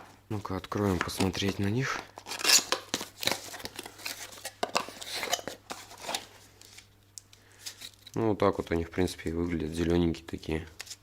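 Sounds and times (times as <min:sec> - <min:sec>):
cardboard packaging tearing and rustling: 0:02.2 - 0:06.8.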